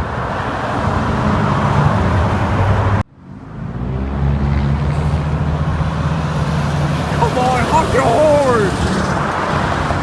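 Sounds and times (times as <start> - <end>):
truck diesel engine drone: 3.1 - 10.0
tyre and wind rush: 4.8 - 10.0.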